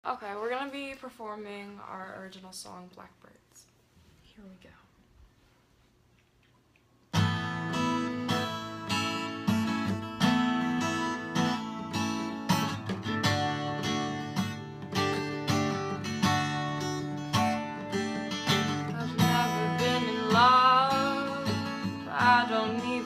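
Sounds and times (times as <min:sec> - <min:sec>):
acoustic guitar strumming chords: 0:07.2 - 0:23.0.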